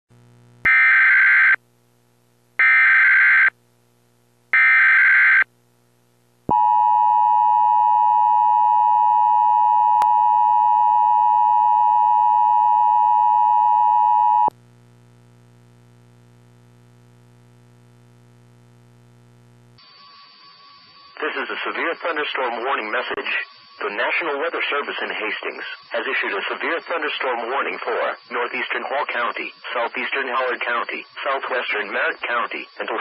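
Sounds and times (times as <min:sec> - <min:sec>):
digital header data bursts: 0:19.8 - 0:33.0.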